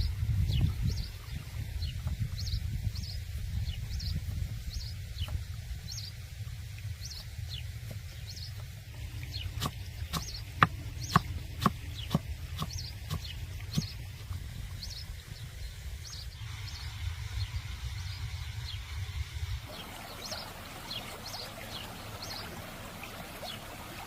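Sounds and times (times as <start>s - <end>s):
low steady rumble: 0.0s - 23.8s
bird chirping: 9.2s - 14.1s.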